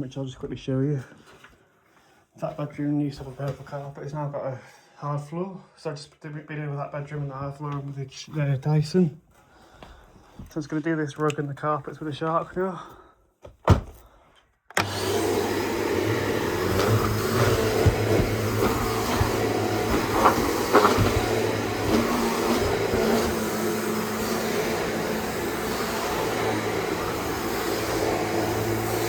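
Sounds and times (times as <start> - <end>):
vacuum cleaner running: 14.8 - 29.0.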